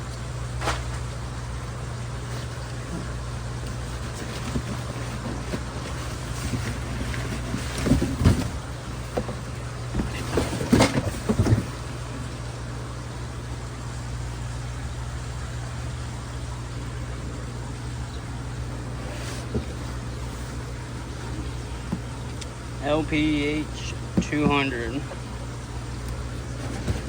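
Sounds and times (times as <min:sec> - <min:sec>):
aquarium equipment humming: 0:00.0 - 0:27.0
packaging rustling and knocking: 0:03.8 - 0:12.0, 0:26.1 - 0:27.0.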